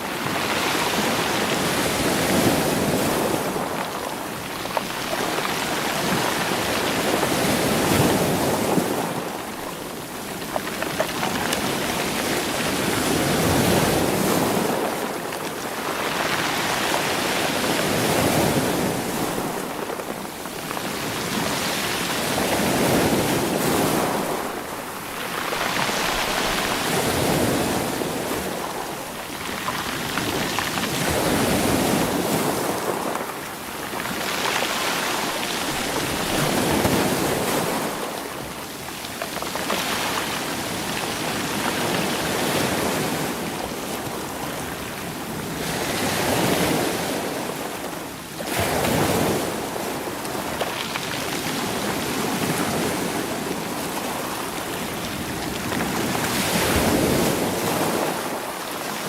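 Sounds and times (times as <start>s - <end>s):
stones rolling in surf: 0.0s - 44.0s
waves breaking on rocky shore: 0.0s - 59.0s.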